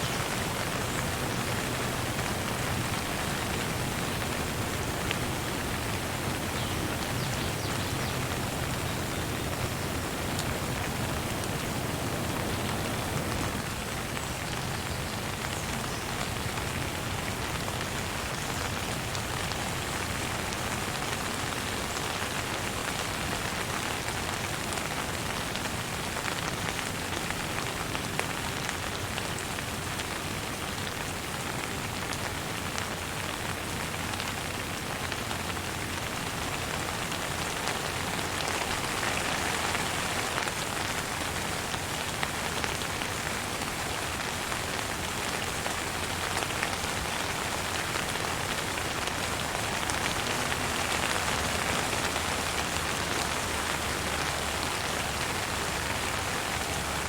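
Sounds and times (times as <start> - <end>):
gentle rain falling: 0.0 - 57.0.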